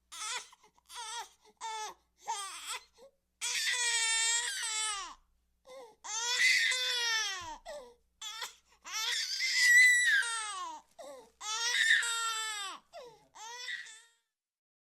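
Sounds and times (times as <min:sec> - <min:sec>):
baby crying: 0:00.1 - 0:14.2
baby gasping sobs: 0:05.7 - 0:09.1, 0:10.6 - 0:13.6.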